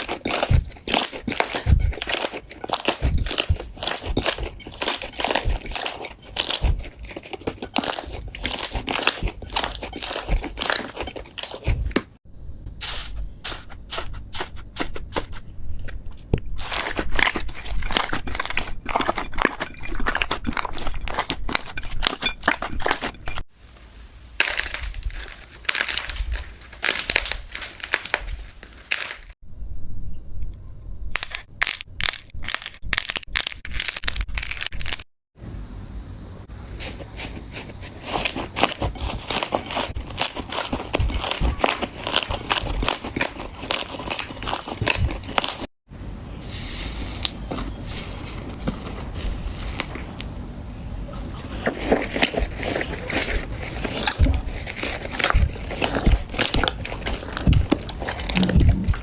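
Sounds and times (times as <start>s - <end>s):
slime crackling and popping: 0.0s - 12.1s, 38.6s - 45.7s.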